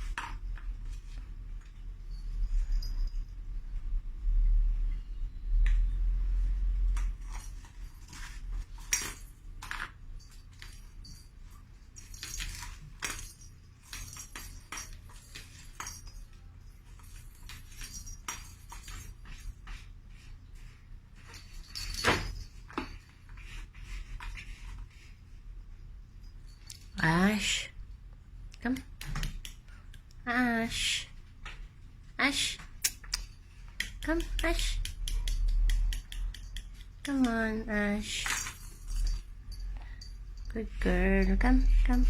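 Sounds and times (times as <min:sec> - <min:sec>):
rattle toy clicking and jingling: 0:32.9 - 0:37.5
toy clattering: 0:38.1 - 0:40.6.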